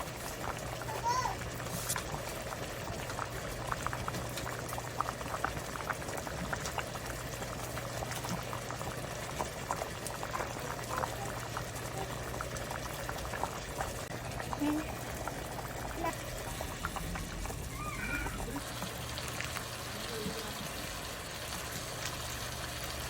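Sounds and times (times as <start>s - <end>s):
stew boiling with bubbling pops: 0.0s - 23.0s.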